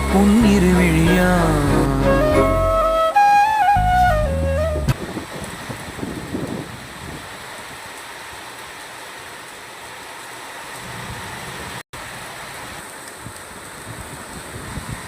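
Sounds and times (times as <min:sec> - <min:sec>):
rain falling: 0:03.2 - 0:15.0.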